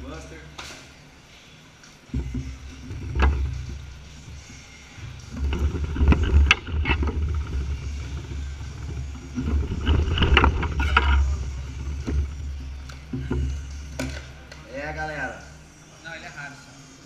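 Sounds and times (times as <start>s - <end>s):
phone handling rumble: 5.1s - 14.2s.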